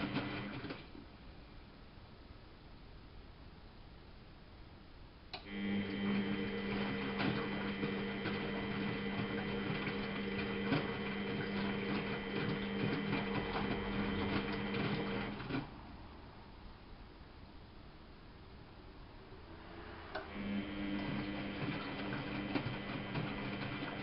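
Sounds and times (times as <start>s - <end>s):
washing machine motor humming: 0.0s - 1.0s, 5.4s - 15.9s, 19.3s - 24.0s.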